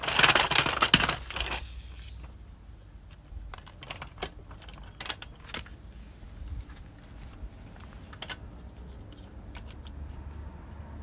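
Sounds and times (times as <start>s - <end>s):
metallic jangling and clatter: 0.0s - 2.4s.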